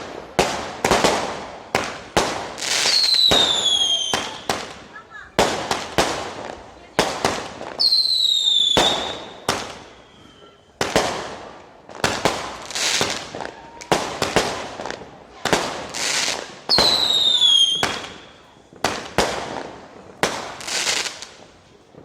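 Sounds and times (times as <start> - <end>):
firework hiss: 0.0 - 21.8
fireworks banging: 0.0 - 22.0
falling firework whistle: 2.7 - 4.6, 7.8 - 10.8, 16.7 - 18.8.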